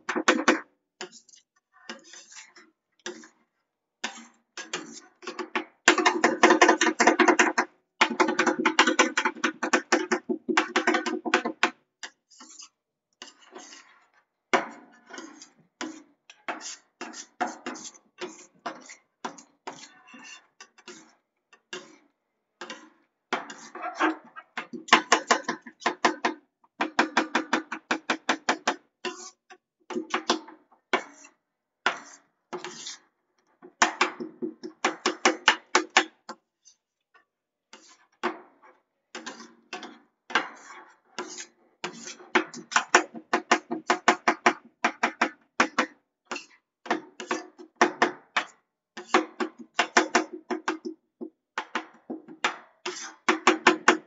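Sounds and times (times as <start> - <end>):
metal spatulas chopping on cold plate: 22.6 - 29.4, 39.2 - 50.9.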